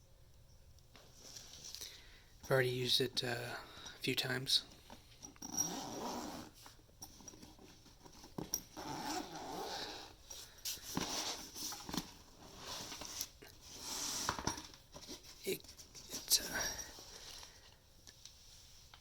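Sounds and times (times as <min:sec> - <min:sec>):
rustling and scraping: 0:00.9 - 0:03.3, 0:04.7 - 0:19.0.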